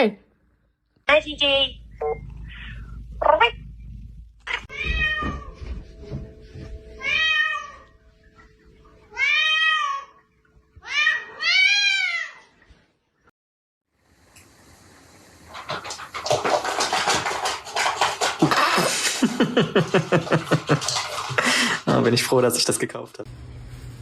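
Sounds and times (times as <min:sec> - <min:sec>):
cat meowing: 0:04.5 - 0:05.6, 0:07.0 - 0:08.0, 0:09.1 - 0:10.2, 0:10.8 - 0:12.5.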